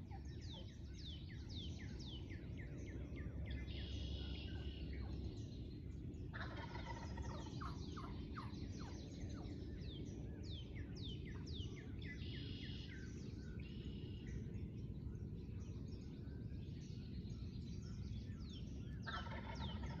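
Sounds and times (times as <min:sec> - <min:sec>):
songbirds chirping: 0:00.0 - 0:20.0
turkey gobbling: 0:06.3 - 0:08.5, 0:19.1 - 0:20.0.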